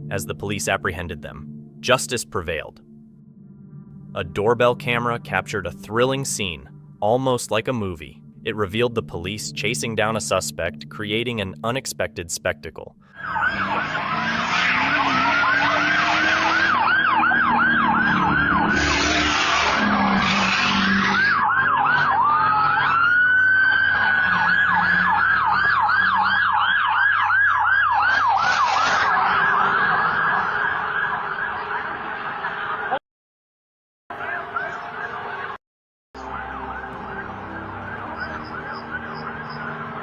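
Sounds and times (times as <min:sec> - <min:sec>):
police sirens yelping: 0:13.1 - 0:33.0, 0:34.1 - 0:35.6, 0:36.2 - 0:40.0
slow rising siren wail: 0:13.1 - 0:33.0, 0:34.1 - 0:35.6, 0:36.2 - 0:40.0.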